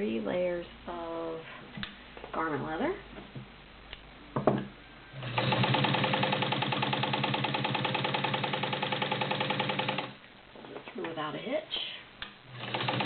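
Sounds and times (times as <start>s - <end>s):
sewing machine stitching leather: 5.2s - 10.2s, 12.6s - 13.0s.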